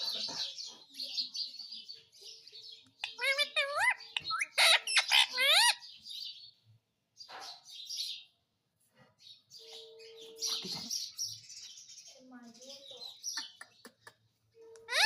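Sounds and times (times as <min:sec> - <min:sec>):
parrot chirping: 0:02.4 - 0:06.6, 0:14.8 - 0:15.0
parrot squawking: 0:03.0 - 0:05.9.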